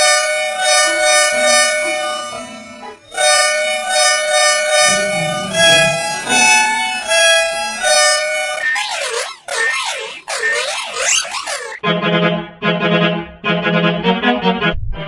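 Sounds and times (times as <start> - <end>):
musical bus horn: 0.0 - 8.7.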